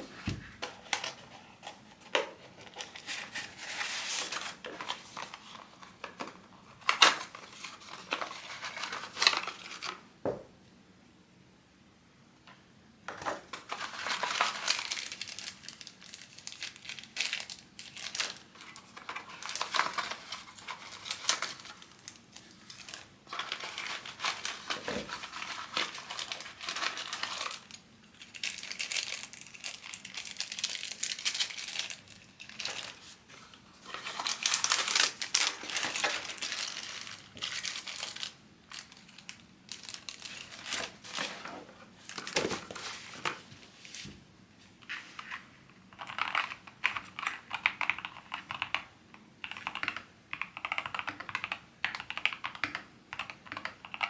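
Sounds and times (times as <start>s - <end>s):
plastic wrapping crinkling: 13.6s - 44.1s.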